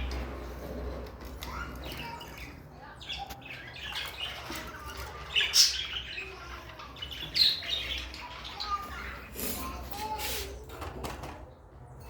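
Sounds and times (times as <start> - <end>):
budgerigars chirping: 1.5 - 9.3.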